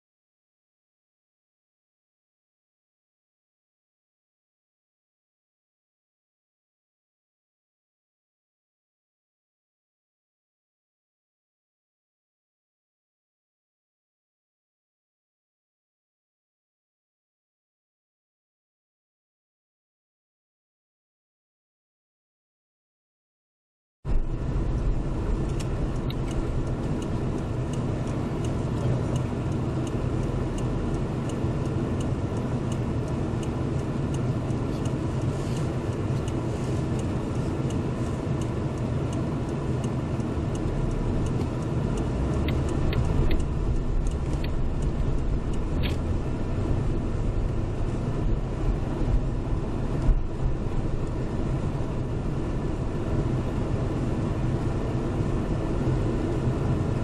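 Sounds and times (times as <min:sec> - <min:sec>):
low engine rumble: 0:24.1 - 0:57.0
tyre and road noise: 0:24.1 - 0:57.0
sharp ticks: 0:24.4 - 0:48.2.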